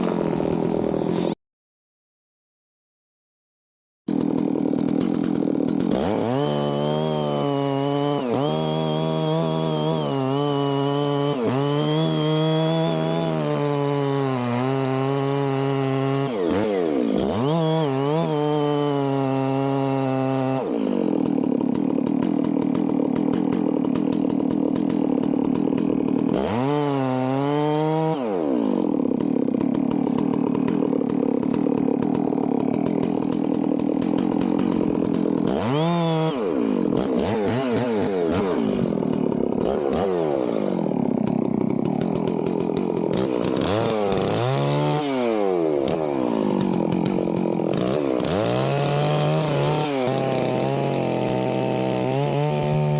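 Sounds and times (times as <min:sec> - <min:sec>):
chainsaw cutting wood: 0:00.0 - 0:01.4, 0:04.1 - 0:52.9.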